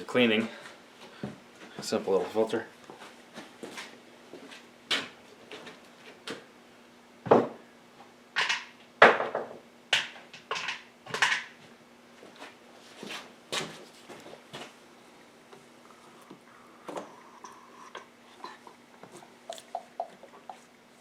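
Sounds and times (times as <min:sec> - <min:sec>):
faint steady hum: 0:00.0 - 0:21.0
tools and parts clicking and knocking: 0:10.0 - 0:11.5.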